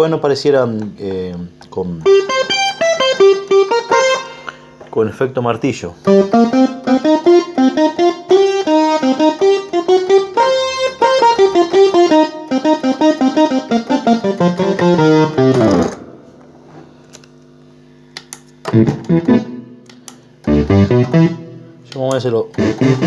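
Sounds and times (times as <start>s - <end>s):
sampled piano runs and chords: 2.0s - 4.5s, 6.0s - 16.3s, 18.7s - 23.0s.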